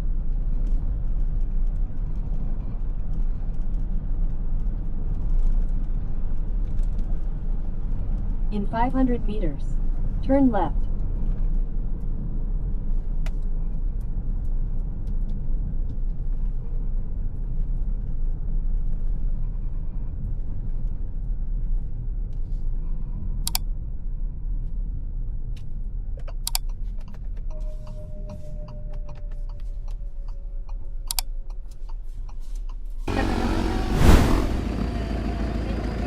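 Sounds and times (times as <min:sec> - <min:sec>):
car interior road rumble: 0:00.0 - 0:36.0
sharp clicks: 0:26.2 - 0:26.8.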